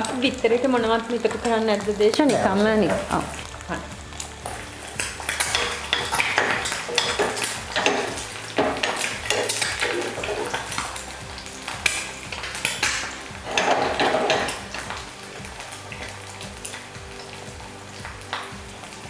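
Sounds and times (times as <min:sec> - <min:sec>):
egg sizzling in a pan: 0:00.0 - 0:19.0
metal utensil scraping a pan: 0:02.3 - 0:16.9.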